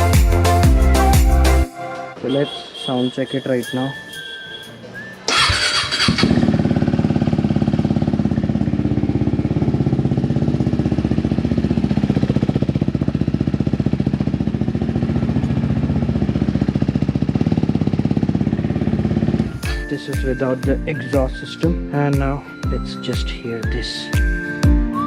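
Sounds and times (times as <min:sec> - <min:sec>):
motorcycle engine cranking: 0:05.3 - 0:09.0
motorcycle engine idling: 0:05.3 - 0:19.8.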